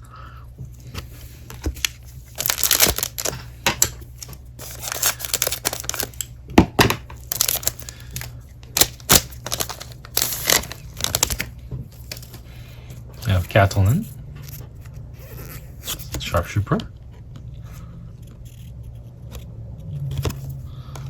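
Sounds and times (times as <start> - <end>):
foil wrapper crinkling: 1.4 - 12.6.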